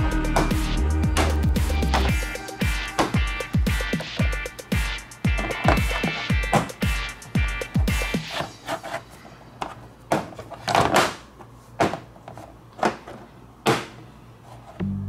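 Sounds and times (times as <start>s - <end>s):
background music with a beat: 0.0s - 8.6s.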